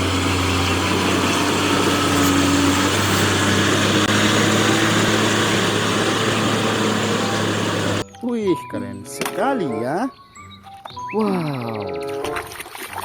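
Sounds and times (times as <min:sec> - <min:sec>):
pressure washer motor hum: 0:00.0 - 0:08.0
water jet hissing: 0:00.0 - 0:08.0.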